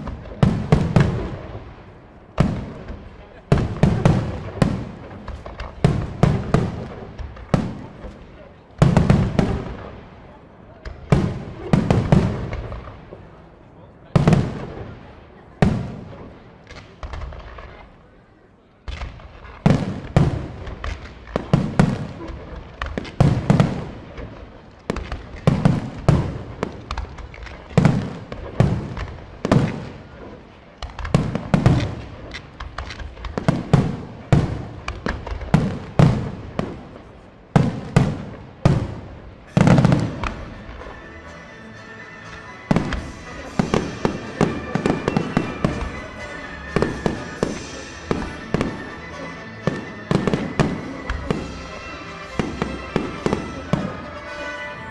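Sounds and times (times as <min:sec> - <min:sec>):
fireworks booming: 0:00.0 - 0:13.4, 0:14.1 - 0:17.9, 0:18.9 - 0:54.7
fireworks crackling: 0:00.0 - 0:18.2, 0:18.8 - 0:54.9.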